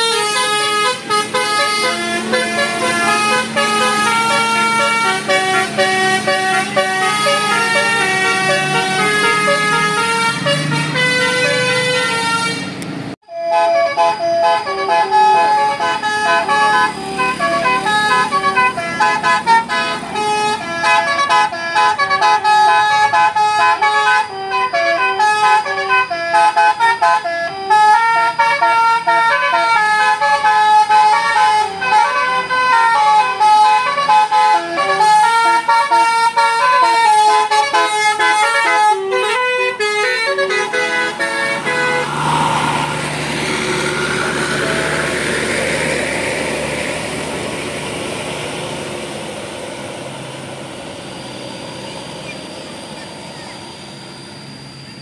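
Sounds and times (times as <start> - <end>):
bus melody horn: 0.0 - 55.0.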